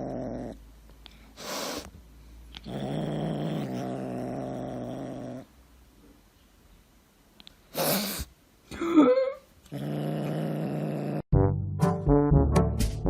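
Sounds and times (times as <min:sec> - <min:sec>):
cat hissing: 0:01.4 - 0:01.9, 0:07.7 - 0:08.4.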